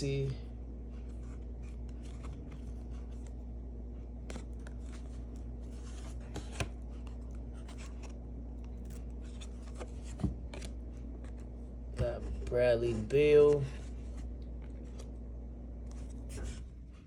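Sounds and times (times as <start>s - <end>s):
steady low hum: 0.0s - 17.0s
cards sliding and rubbing: 0.9s - 3.4s, 4.2s - 15.1s, 15.9s - 16.8s.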